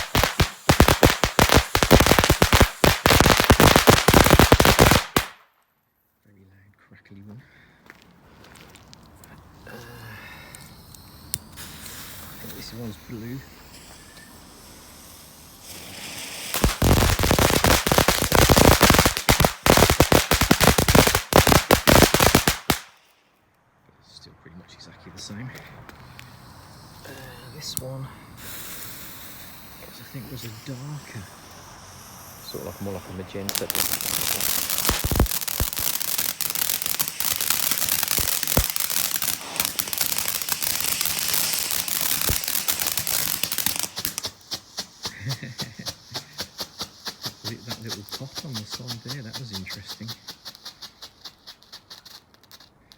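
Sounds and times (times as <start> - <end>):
firework fountain hissing: 0.0 - 5.4, 9.7 - 23.0, 25.2 - 52.9
firework fountain crackling: 0.0 - 5.6, 10.4 - 23.1, 25.2 - 52.9
loud single pops: 0.0 - 5.6, 16.5 - 23.1, 33.5 - 44.5.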